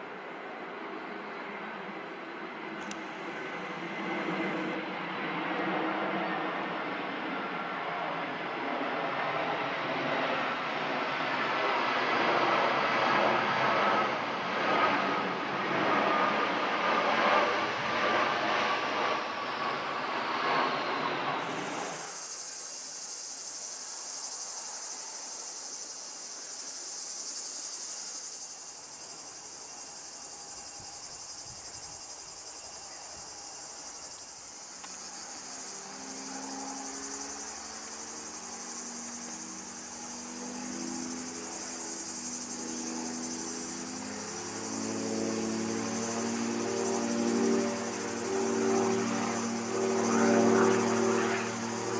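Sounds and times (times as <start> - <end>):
cicadas chorus: 0.0 - 51.9.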